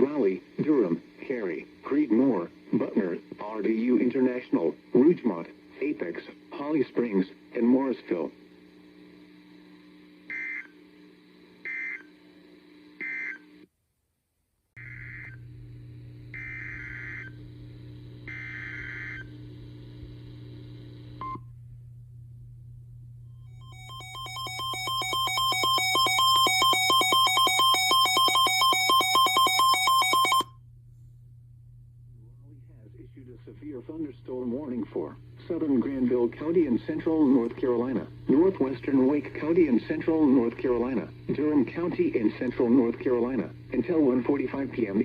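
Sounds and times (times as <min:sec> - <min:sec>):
low steady hum: 0:14.8 - 0:45.0
pulsing electronic alert tone: 0:23.5 - 0:30.5
warbling data bursts: 0:23.6 - 0:30.4.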